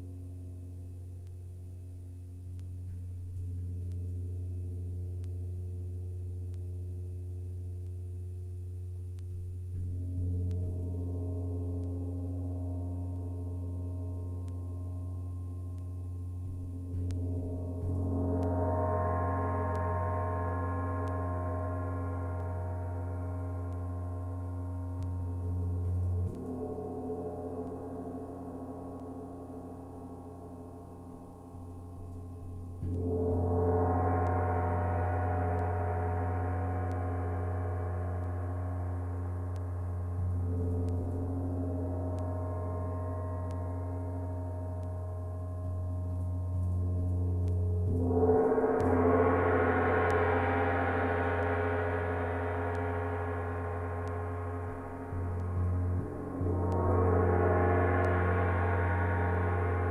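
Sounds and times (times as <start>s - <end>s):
steady low hum: 0.0s - 59.9s
large gong struck with mallet: 47.4s - 59.9s.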